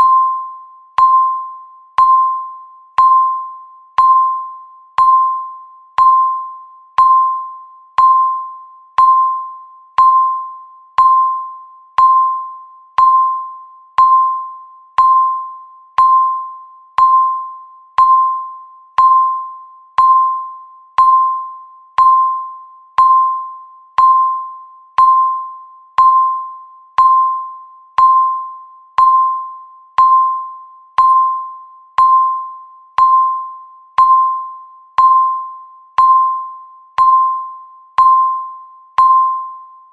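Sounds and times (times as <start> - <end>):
countdown timer beeps: 0.0 - 39.9.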